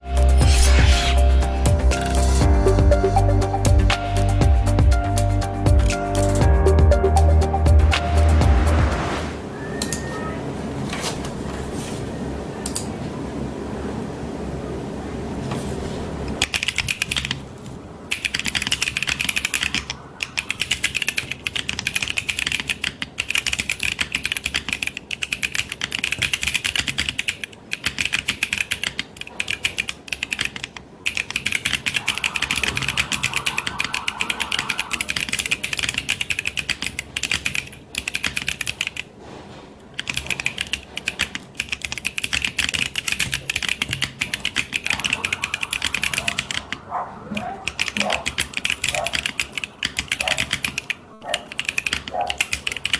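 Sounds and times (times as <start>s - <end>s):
mechanical keyboard typing: 16.4s - 17.4s, 18.1s - 32.5s, 33.8s - 39.1s, 40.0s - 46.8s, 47.6s - 52.9s.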